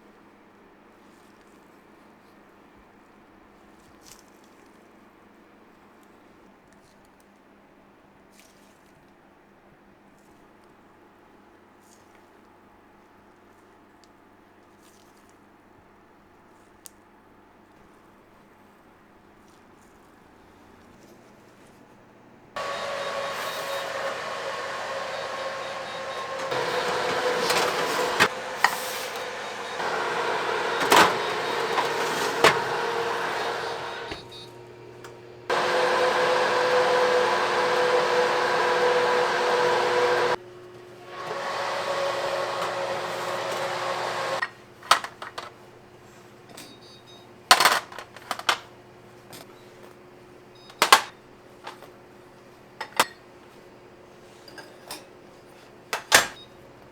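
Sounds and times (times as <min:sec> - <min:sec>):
small electric motor whining: 0:22.6 - 0:40.4.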